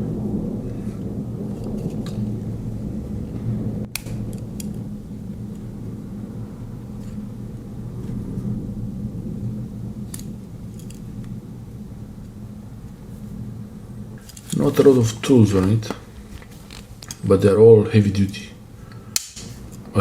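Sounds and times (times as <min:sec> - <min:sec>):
steady low rumble: 0:00.0 - 0:20.0
sharp snap: 0:03.9 - 0:04.8, 0:19.1 - 0:19.8.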